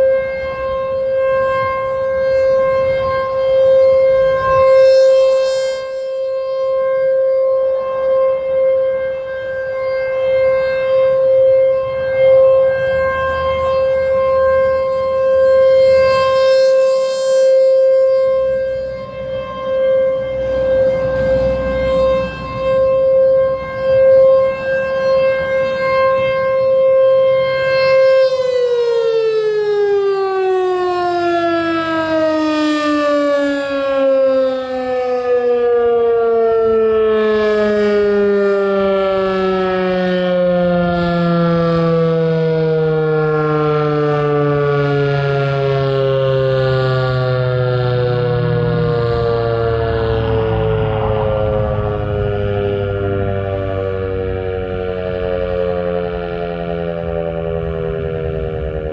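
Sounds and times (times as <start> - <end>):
rotating tornado siren: 0.0 - 58.9.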